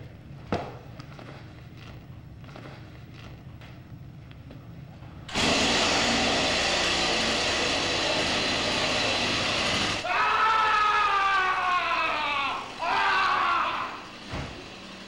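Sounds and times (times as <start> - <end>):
chainsaw running: 5.3 - 15.0
person screaming: 10.0 - 14.1.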